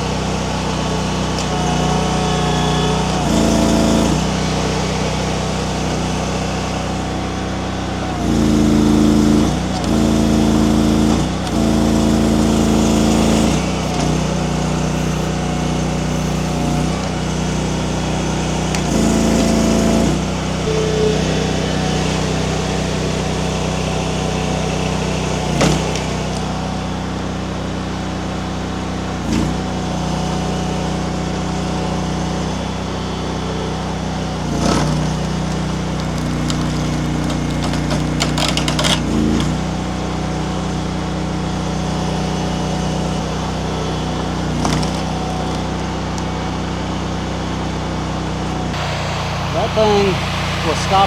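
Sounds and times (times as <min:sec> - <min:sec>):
skid steer engine under load: 0:00.0 - 0:51.0
wood crackling: 0:48.8 - 0:51.0.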